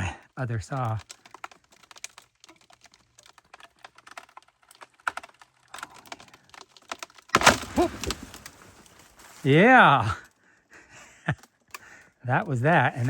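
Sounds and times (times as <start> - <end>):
bowed log crackling and snapping: 0.0 - 13.0.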